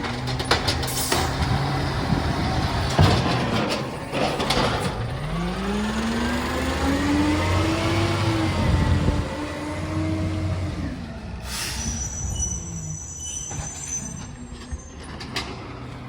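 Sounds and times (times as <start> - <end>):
truck engine revving: 0.0 - 11.3.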